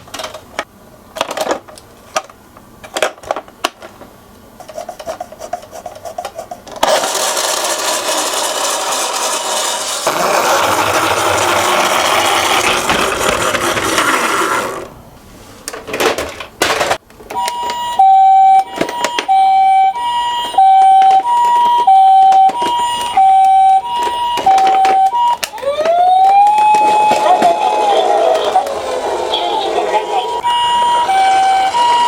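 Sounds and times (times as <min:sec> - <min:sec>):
toy car rattling: 0:06.7 - 0:14.9
electronic two-tone ambulance siren: 0:17.3 - 0:32.0
rising siren wail: 0:17.7 - 0:29.4, 0:30.3 - 0:32.0.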